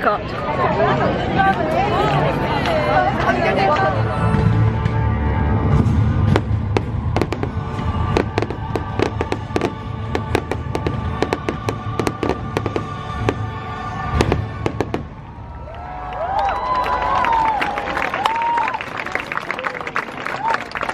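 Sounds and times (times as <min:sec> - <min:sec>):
music: 0:01.2 - 0:15.8
fireworks bangs and crackles: 0:05.6 - 0:15.5.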